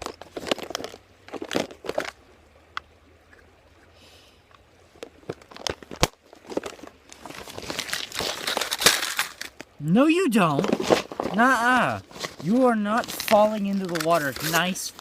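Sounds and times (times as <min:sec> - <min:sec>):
handling clicks and knocks: 0:05.0 - 0:09.7, 0:10.5 - 0:15.0.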